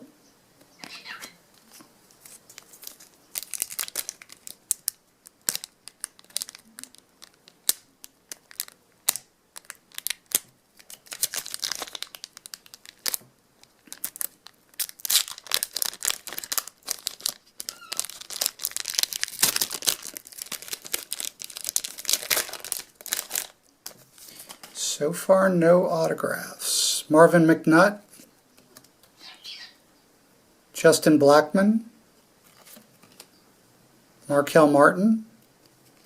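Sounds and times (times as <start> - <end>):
card wrappers tearing and crinkling: 1.6 - 24.6.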